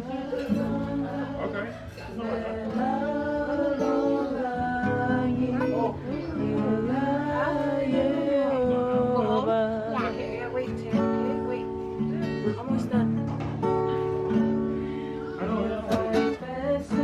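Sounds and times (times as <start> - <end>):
people singing worship song: 0.0 - 10.4, 14.8 - 17.0
acoustic guitar chords: 0.0 - 17.0.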